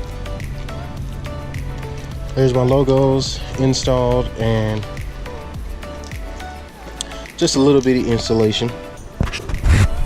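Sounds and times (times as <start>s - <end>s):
background music: 0.0s - 10.0s.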